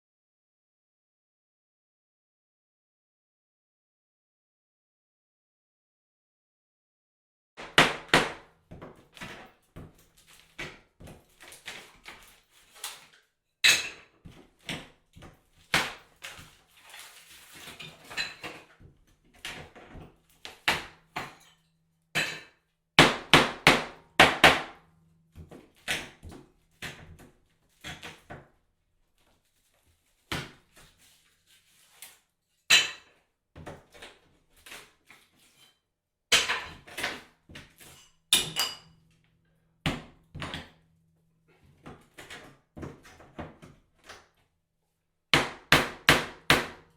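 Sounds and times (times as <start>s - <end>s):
debris crumbling and scraping: 16.2s - 18.8s.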